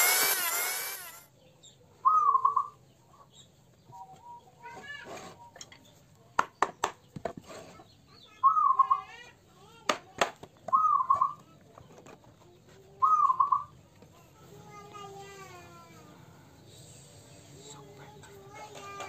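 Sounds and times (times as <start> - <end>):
bird calling: 2.0 - 2.8, 8.3 - 9.1, 10.7 - 11.4, 13.0 - 13.7.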